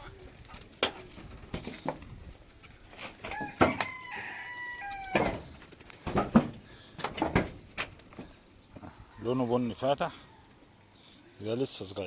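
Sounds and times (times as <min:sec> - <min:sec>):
rooster crowing: 0:03.3 - 0:05.5, 0:09.0 - 0:10.5.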